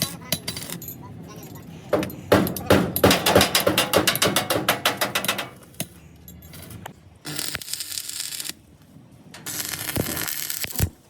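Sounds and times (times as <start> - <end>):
hammering on sheet metal: 1.9 - 5.6.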